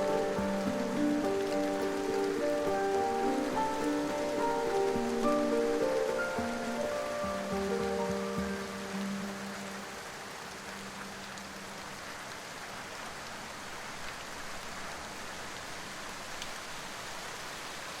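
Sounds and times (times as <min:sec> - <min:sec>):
soft background music: 0:00.0 - 0:12.1
steady rain: 0:00.0 - 0:18.0.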